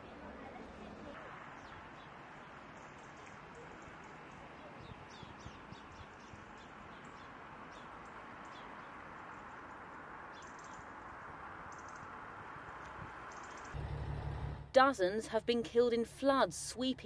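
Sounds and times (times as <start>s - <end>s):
small birds chirping: 1.6s - 11.0s, 12.7s - 13.8s.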